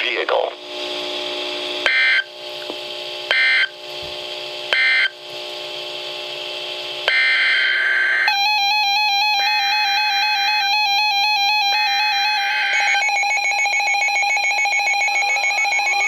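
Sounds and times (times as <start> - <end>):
steady beeping tones: 7.1 - 16.0
raspy digital data tones: 12.3 - 16.0.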